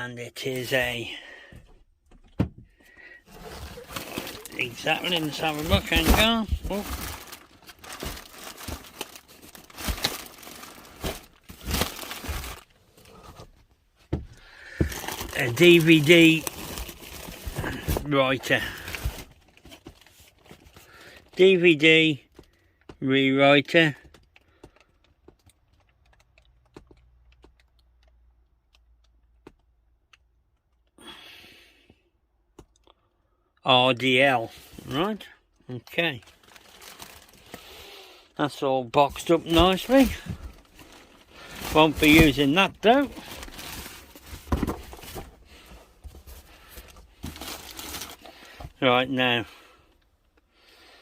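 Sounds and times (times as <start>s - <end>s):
packaging crinkling: 3.3s - 13.3s, 14.8s - 21.2s, 36.1s - 38.0s, 39.1s - 48.7s
packaging clicks and taps: 24.0s - 30.8s.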